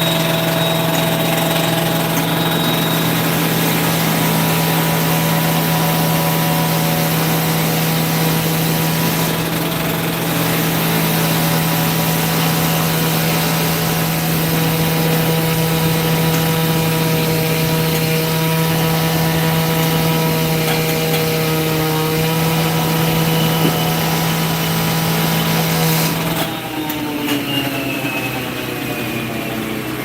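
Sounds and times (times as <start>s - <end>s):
power saw cutting stone: 0.0s - 30.0s.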